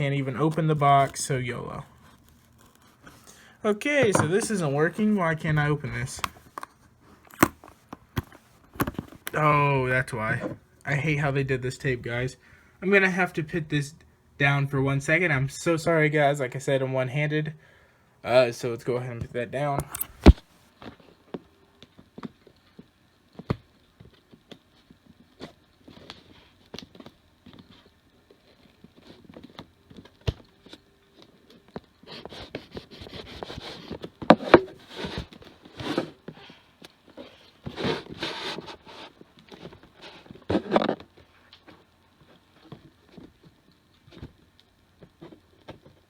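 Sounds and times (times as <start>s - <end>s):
cardboard box being handled: 3.9s - 6.7s
tape and cardboard tearing: 4.0s - 9.4s, 19.8s - 20.5s.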